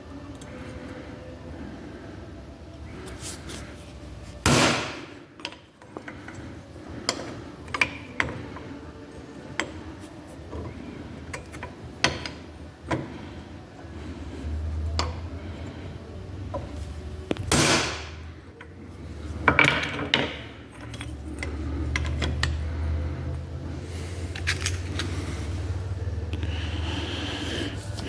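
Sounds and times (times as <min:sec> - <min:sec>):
hammer striking steel: 0:04.4 - 0:05.1, 0:17.5 - 0:18.2.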